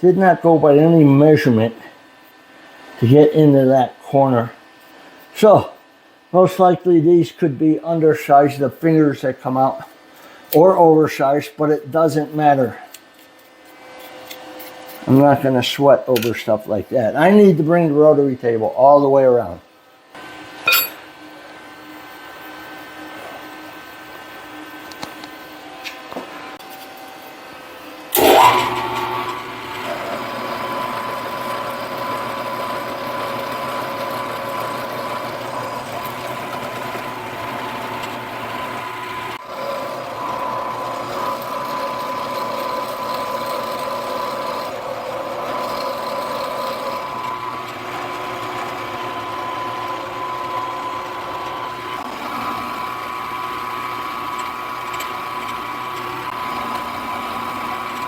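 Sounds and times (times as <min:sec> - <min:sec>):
milling machine cutting: 0:28.1 - 0:58.0.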